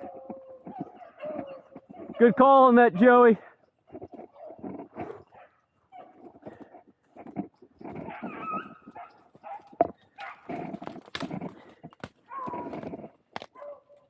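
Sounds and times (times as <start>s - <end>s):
beagles baying: 0.0s - 6.8s, 7.8s - 10.8s.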